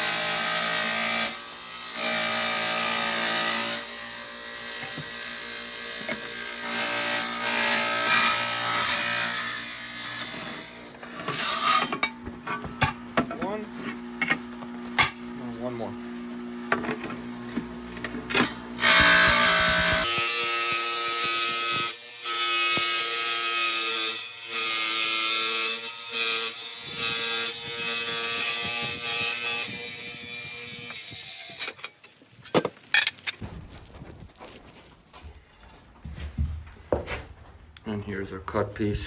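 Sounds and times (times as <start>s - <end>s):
tile saw whining cut: 0.0s - 12.1s, 18.3s - 31.9s
sharp knocks: 18.8s - 20.3s.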